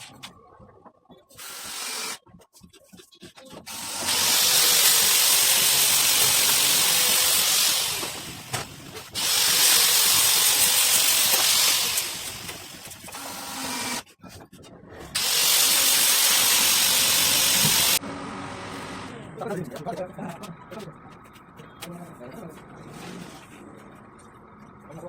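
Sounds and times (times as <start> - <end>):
workshop tool hissing: 1.4 - 2.2, 3.7 - 14.0, 15.2 - 18.0.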